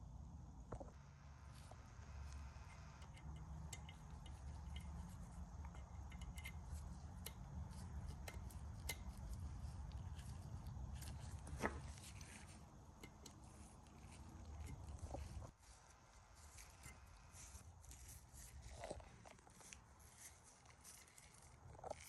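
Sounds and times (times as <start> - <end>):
low steady hum: 0.0 - 22.0
metal tools clicking: 2.7 - 11.4.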